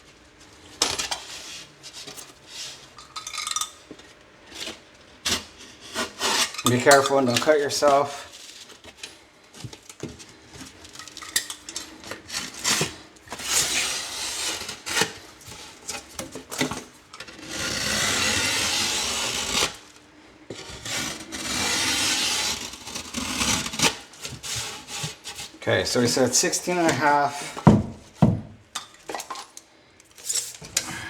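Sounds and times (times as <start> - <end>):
utility knife scraping drywall: 5.2 - 8.4, 12.1 - 16.1, 16.7 - 19.8, 20.5 - 27.8.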